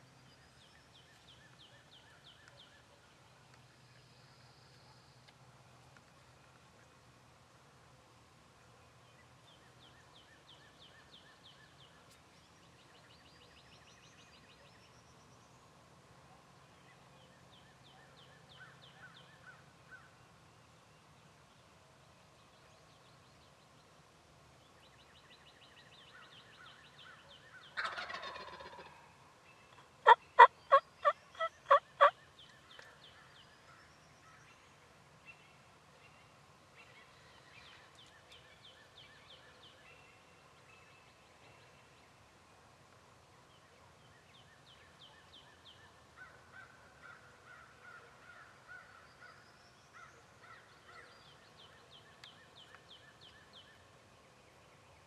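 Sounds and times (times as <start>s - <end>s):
turkey gobbling: 27.8s - 29.0s, 30.0s - 32.2s
turkey yelps: 27.8s - 29.0s, 30.1s - 32.1s
songbirds trilling: 29.6s - 42.1s.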